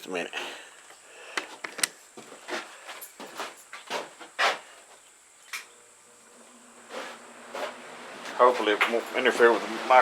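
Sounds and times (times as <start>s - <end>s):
footstep scuffs: 1.5s - 5.1s, 6.8s - 9.5s
electric fan humming: 5.2s - 10.0s.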